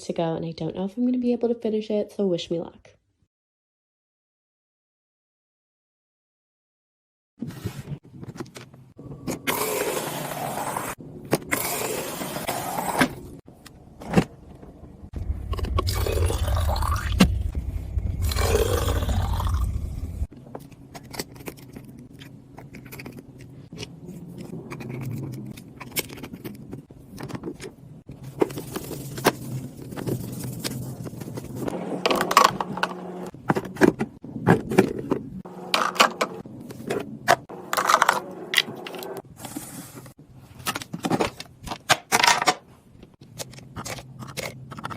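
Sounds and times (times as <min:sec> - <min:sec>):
low rumble: 0:14.8 - 0:20.3.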